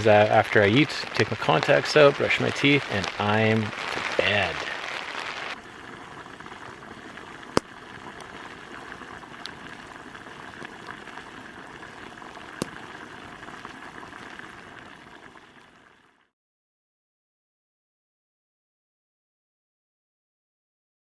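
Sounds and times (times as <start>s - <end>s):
heavy raindrop taps: 0.0s - 4.9s
steady rain falling: 0.0s - 5.7s.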